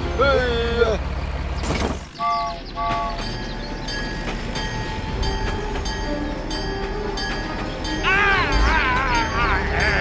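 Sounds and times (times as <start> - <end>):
train rumbling: 0.0 - 10.0
train horn blasts: 2.2 - 3.2
train wheels clacking: 2.8 - 10.0.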